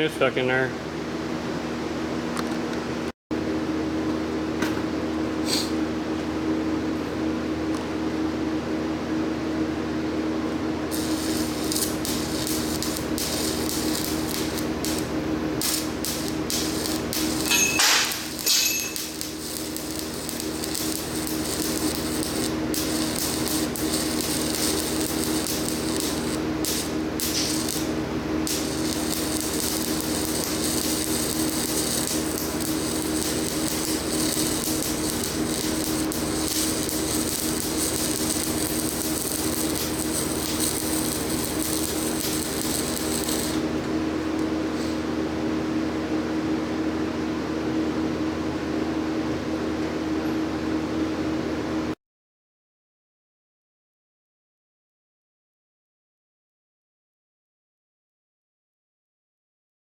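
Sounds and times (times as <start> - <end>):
machine hum: 0.1 - 47.4
welding arc crackling and hissing: 10.9 - 43.8.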